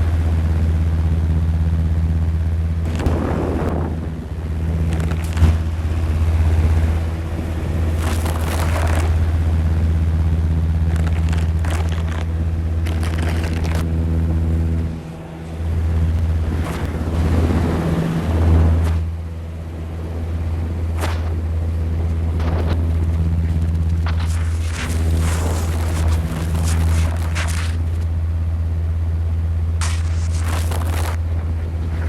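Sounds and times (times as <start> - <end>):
film projector hum: 0.0 - 32.0
bursts of hiss: 29.8 - 31.2.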